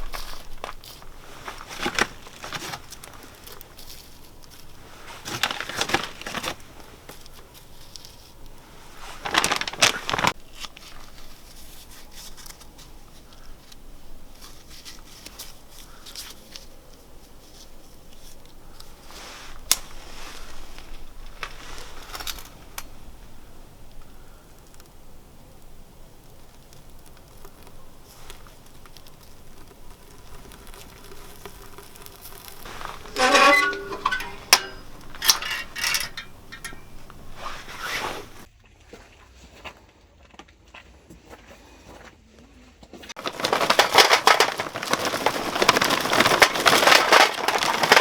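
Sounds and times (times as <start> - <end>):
wrapping crinkling and rustling: 0.0 - 38.5, 43.2 - 48.0.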